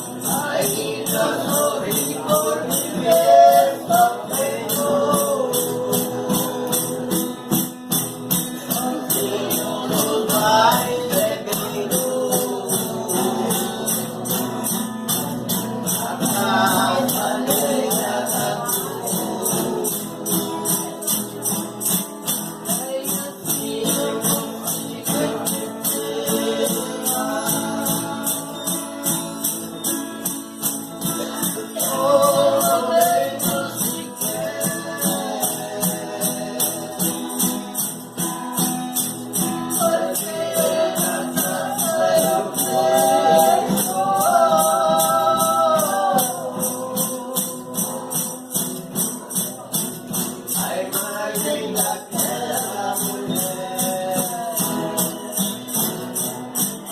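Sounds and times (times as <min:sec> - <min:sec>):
tambourine beat: 0:00.0 - 0:56.9
voices singing folk song: 0:00.0 - 0:56.9.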